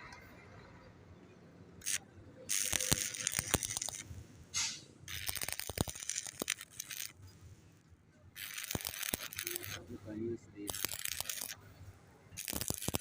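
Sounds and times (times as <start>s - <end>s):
welding arc crackling: 1.8s - 4.1s, 5.1s - 7.2s, 8.4s - 9.9s, 10.6s - 11.6s, 12.4s - 13.0s.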